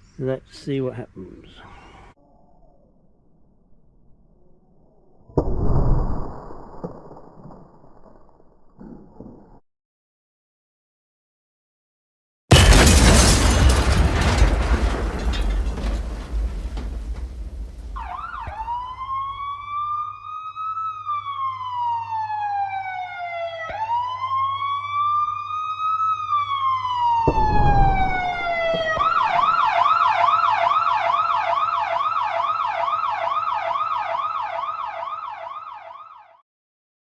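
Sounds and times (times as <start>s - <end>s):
emergency vehicle siren: 18.0s - 36.4s
brief low rumble: 27.3s - 29.0s.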